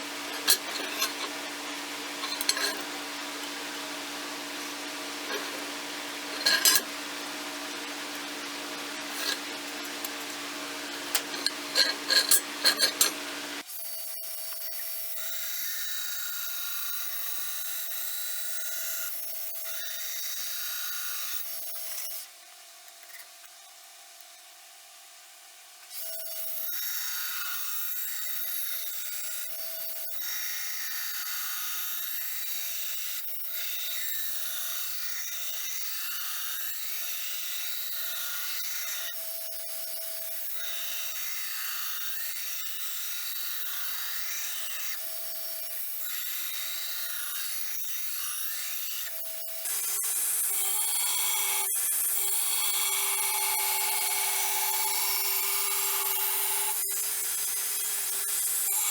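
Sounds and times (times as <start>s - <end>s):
belt grinder grinding steel: 0.0s - 13.6s, 26.9s - 58.9s.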